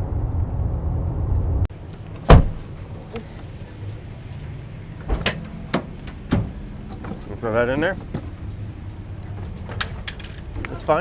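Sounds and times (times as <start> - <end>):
car driving rumble: 0.0 - 11.0
loud thump: 2.3 - 2.7.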